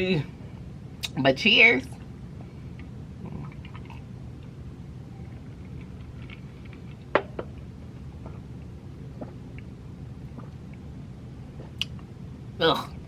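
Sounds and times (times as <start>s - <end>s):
low room hum: 0.0s - 13.0s
person gulping soda: 3.2s - 4.1s, 8.2s - 10.9s, 11.5s - 12.1s.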